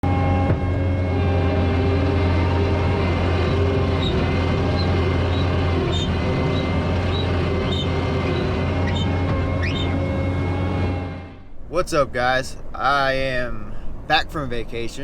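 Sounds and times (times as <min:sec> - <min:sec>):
vehicle engine running: 0:00.0 - 0:11.5.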